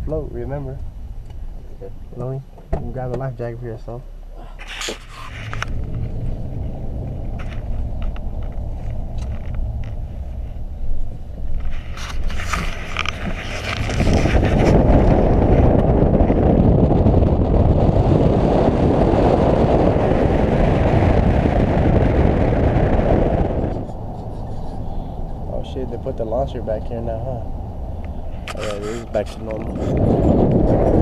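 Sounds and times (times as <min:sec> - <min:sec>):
vehicle rumbling: 0:00.0 - 0:31.0.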